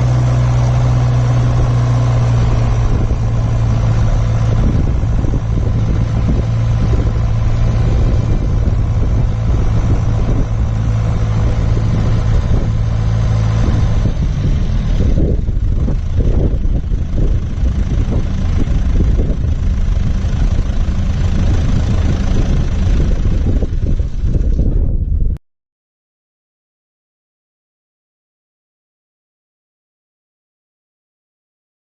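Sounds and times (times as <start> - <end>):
tractor diesel engine running: 0.0 - 25.4
wind rumbling on microphone: 0.0 - 25.4.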